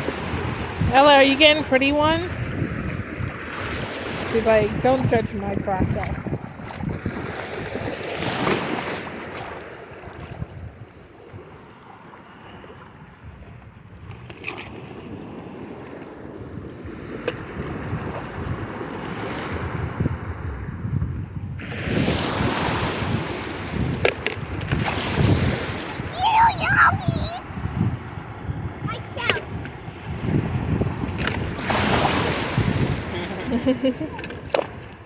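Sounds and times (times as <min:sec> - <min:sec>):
wind buffeting microphone: 0:00.0 - 0:11.6, 0:15.0 - 0:35.0
surf washing on beach: 0:21.6 - 0:35.0.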